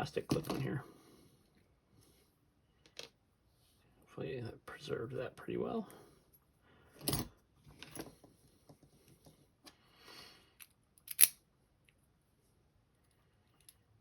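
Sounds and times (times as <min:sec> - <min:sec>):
lock parts clicking and scraping: 0:10.6 - 0:11.4.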